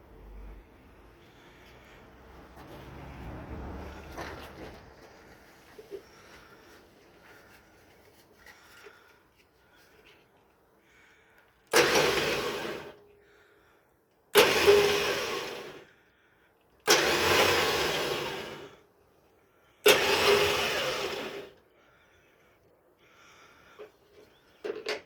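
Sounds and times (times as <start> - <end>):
vehicle winch running: 0.3 - 7.6, 11.7 - 13.0, 14.3 - 15.9, 16.8 - 18.8, 19.8 - 21.7.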